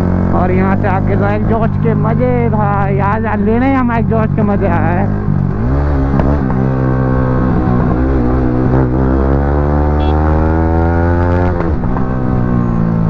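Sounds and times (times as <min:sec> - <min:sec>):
motorcycle engine revving: 0:08.2 - 0:11.6.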